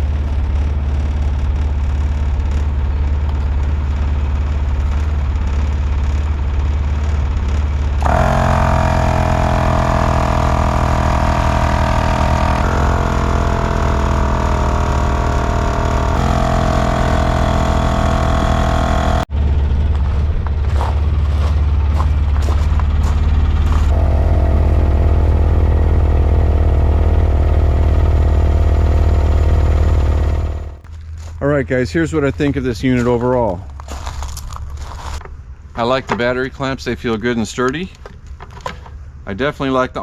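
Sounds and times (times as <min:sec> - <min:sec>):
air compressor motor humming: 0:00.0 - 0:30.8
higher whine: 0:07.8 - 0:33.5.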